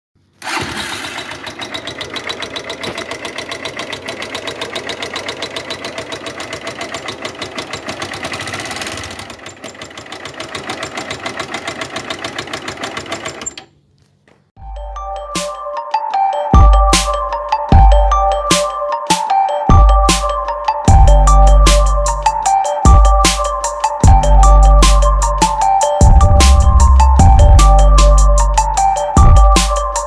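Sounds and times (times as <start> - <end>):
motorcycle engine idling: 0.4 - 13.0
rapid clicking from engine top: 0.4 - 13.7.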